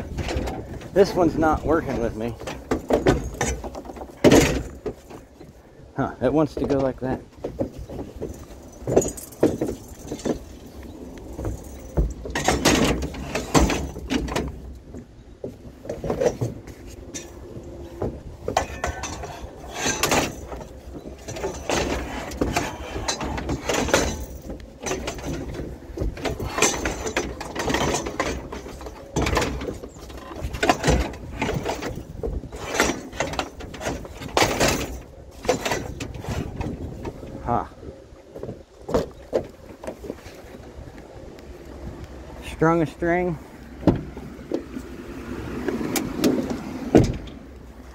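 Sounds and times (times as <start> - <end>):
scrap metal clanking: 0.0 - 5.7, 6.3 - 37.8
metal scraping on metal: 16.1 - 37.6.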